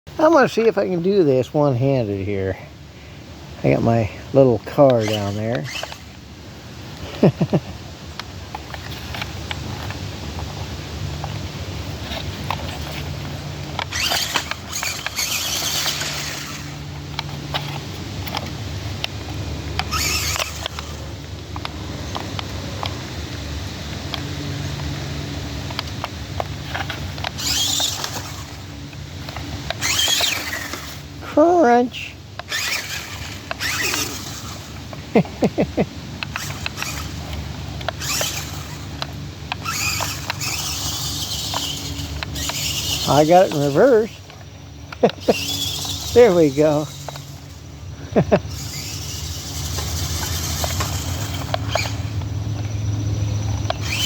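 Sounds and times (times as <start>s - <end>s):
wheels clicking and knocking: 3.6s - 54.0s
tyres scrabbling: 3.7s - 6.2s, 8.2s - 23.5s, 24.1s - 54.0s
small electric motor whirring: 4.7s - 7.6s, 8.2s - 54.0s
short squeaks: 4.9s - 6.1s, 13.8s - 17.8s, 19.8s - 21.1s, 26.7s - 28.6s, 29.7s - 31.0s, 32.0s - 34.6s, 37.9s - 38.9s, 39.6s - 44.2s, 45.0s - 47.4s, 48.5s - 52.2s, 53.6s - 54.0s
scattered clicks: 32.3s - 54.0s.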